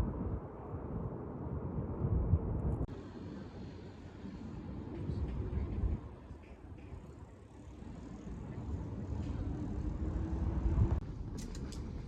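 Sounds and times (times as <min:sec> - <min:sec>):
passing vehicle rumble: 0:06.9 - 0:12.0.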